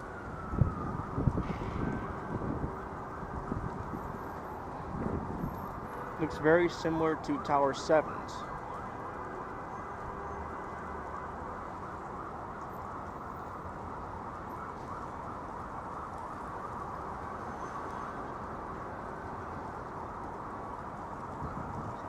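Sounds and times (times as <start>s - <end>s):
traffic hum: 0.0s - 22.0s.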